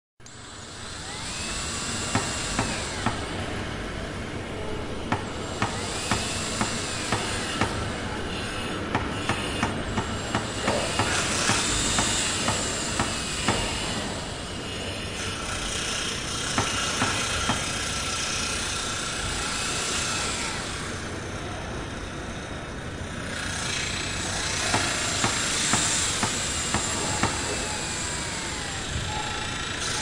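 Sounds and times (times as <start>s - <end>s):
machinery drone: 0.2s - 30.0s
sharp knocks: 8.9s - 14.1s, 16.5s - 17.7s, 24.6s - 27.6s.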